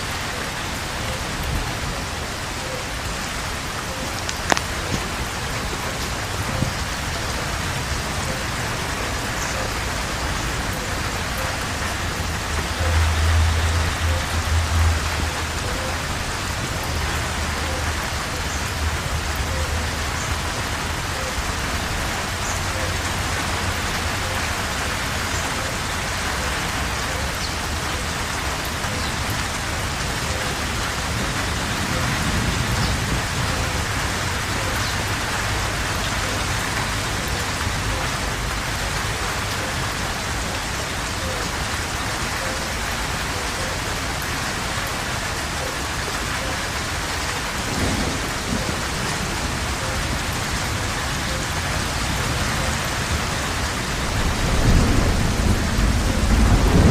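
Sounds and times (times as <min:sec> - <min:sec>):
heavy rain on foliage: 0:00.0 - 0:56.9
thunder rumbling: 0:46.6 - 0:56.9.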